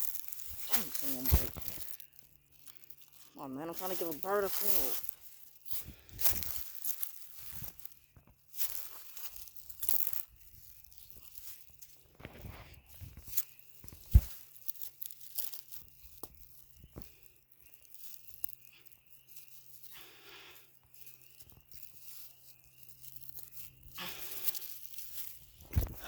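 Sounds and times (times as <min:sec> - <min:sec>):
sticks crackling and snapping: 0:00.0 - 0:12.0, 0:13.1 - 0:19.9, 0:20.8 - 0:26.0
short rustle: 0:00.0 - 0:15.8.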